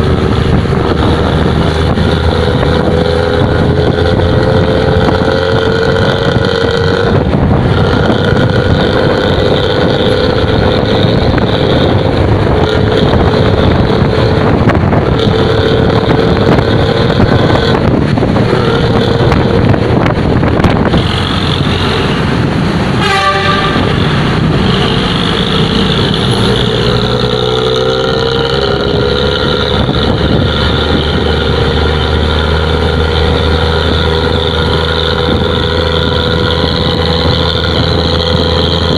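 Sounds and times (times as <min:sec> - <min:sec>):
bus diesel engine rumbling: 0:00.0 - 0:38.9
short horn toot: 0:23.0 - 0:25.1.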